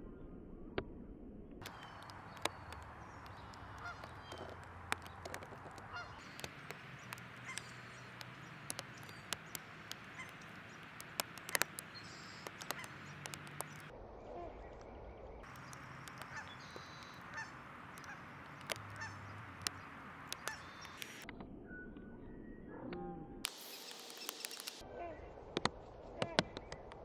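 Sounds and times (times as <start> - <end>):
birds chirping: 1.6 - 13.9, 15.4 - 21.2, 23.5 - 24.8
sharp clicks: 1.6 - 13.9, 15.4 - 21.3, 23.5 - 24.8.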